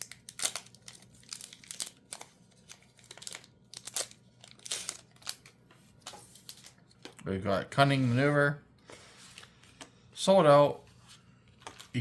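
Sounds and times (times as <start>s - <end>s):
crinkly wrapper tearing: 0.0s - 5.6s.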